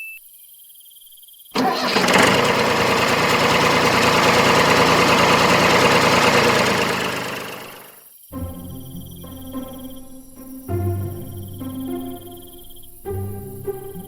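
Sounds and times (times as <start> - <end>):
engine starting and running: 1.6 - 7.9.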